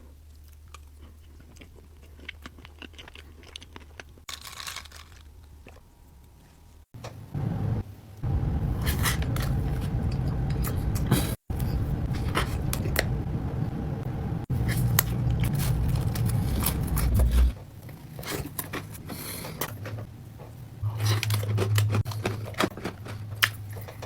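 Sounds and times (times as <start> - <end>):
steady low rumble: 7.2 - 17.6, 20.8 - 23.9
utensil clicks and scrapes: 14.5 - 17.6.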